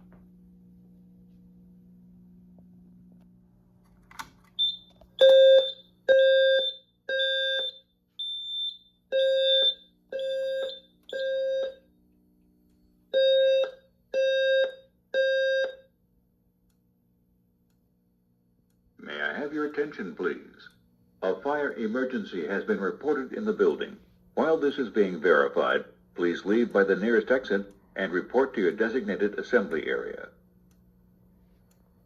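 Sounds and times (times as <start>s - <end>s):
click: 2.6s - 5.4s, 16.6s - 16.8s, 17.6s - 17.8s, 18.6s - 18.8s, 30.7s - 30.9s, 31.5s - 31.9s
fire alarm low tone pulses: 4.6s - 16.1s.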